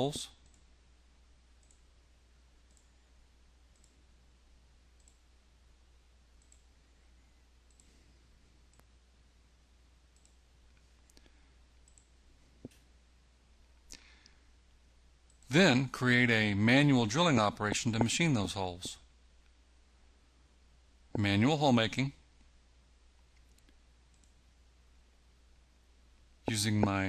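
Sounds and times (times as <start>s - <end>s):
computer mouse clicks: 0.4s - 0.7s, 1.6s - 1.9s, 2.7s - 3.0s, 3.7s - 4.0s, 5.0s - 5.2s, 6.4s - 6.7s, 7.6s - 8.0s, 10.1s - 12.8s, 23.4s - 24.4s.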